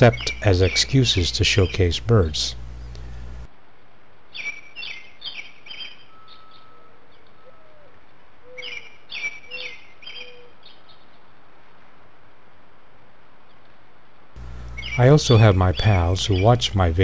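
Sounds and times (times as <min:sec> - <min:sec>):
bird calling: 0:00.0 - 0:03.4, 0:04.3 - 0:11.2, 0:14.4 - 0:17.0.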